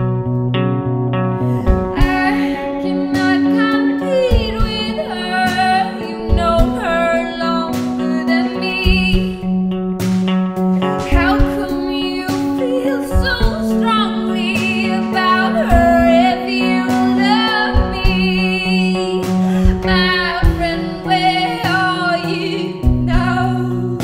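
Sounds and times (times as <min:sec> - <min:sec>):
guitar accompaniment: 0:00.0 - 0:24.0
held bass notes: 0:00.0 - 0:24.0
woman singing: 0:01.4 - 0:09.6, 0:10.8 - 0:24.0
drum hits: 0:19.3 - 0:20.8.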